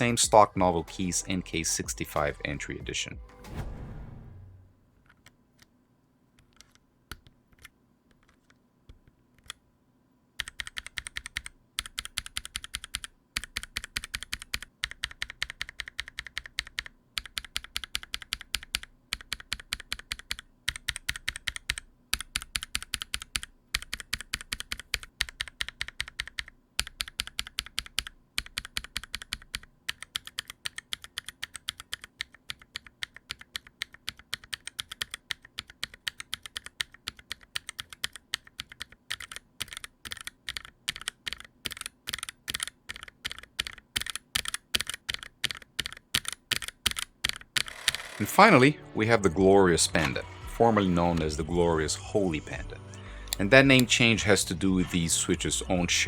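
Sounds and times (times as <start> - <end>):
mechanical keyboard keys clacking: 10.4 - 48.5.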